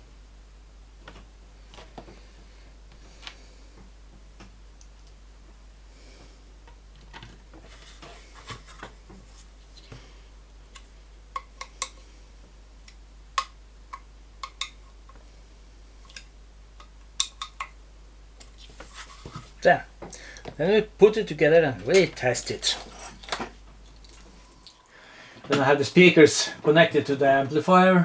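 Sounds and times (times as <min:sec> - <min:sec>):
clicks and taps of small parts: 0:16.1 - 0:17.7.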